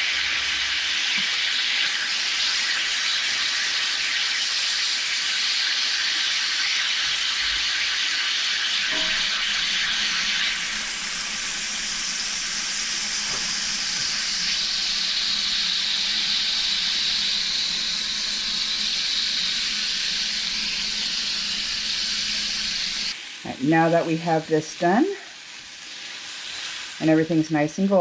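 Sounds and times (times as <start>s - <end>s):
meat sizzling in a pan: 0.0s - 28.0s.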